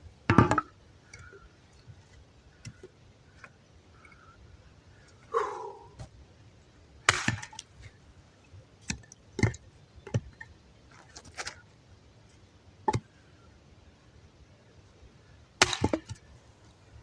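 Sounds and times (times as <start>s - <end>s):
axe chopping firewood: 7.1s - 7.7s, 15.6s - 16.2s.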